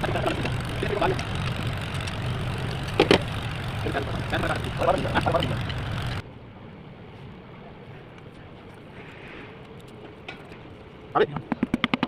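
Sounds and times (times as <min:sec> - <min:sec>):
voices: 0:00.0 - 0:06.2
engine running: 0:00.0 - 0:06.3.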